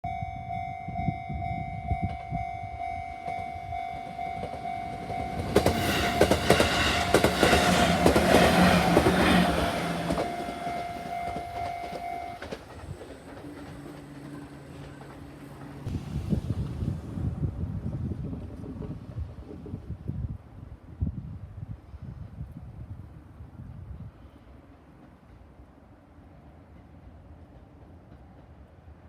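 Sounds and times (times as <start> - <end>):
level crossing warning signal: 0.0 - 12.6
train wheels clicking over rail joints: 4.0 - 15.9.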